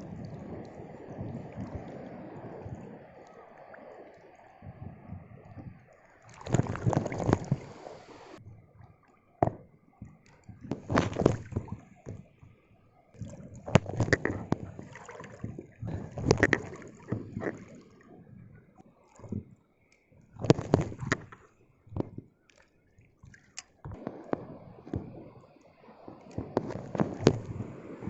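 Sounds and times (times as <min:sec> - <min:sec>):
sea water sloshing and splashing: 0:00.0 - 0:28.0
sharp crackles and clicks: 0:09.0 - 0:12.4, 0:13.2 - 0:17.8, 0:19.2 - 0:28.0.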